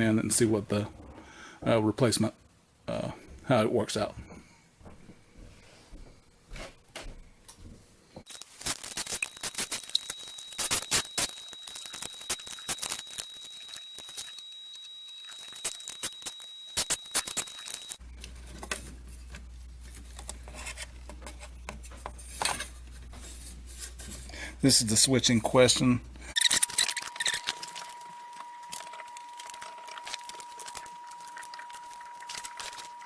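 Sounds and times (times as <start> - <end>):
faint high whine: 8.3 - 18.0, 26.4 - 33.0
small tools clicking and scraping: 8.3 - 18.0, 26.4 - 33.0.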